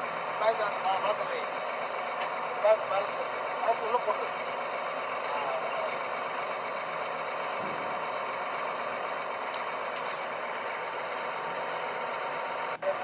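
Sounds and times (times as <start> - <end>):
drilling rig running: 0.0 - 13.0
sharp mechanical ticks: 0.2 - 12.9.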